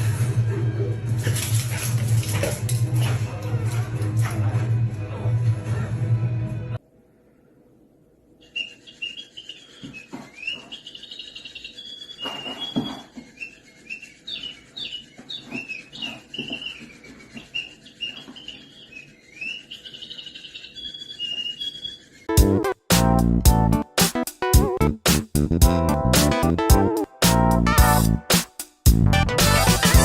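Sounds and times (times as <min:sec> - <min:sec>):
small bird chirping: 0:08.4 - 0:22.3
loud music: 0:22.4 - 0:30.0.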